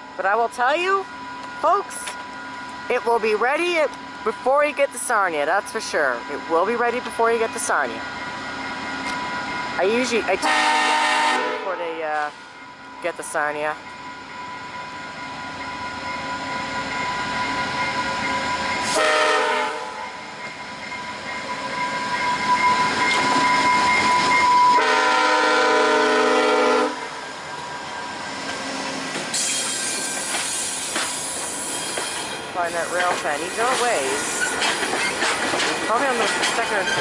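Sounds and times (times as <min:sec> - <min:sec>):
rumble of approaching train: 0:00.0 - 0:37.0
train cars clattering past: 0:01.2 - 0:37.0
train air horn blasts: 0:10.4 - 0:12.0, 0:18.8 - 0:20.0, 0:24.5 - 0:27.2.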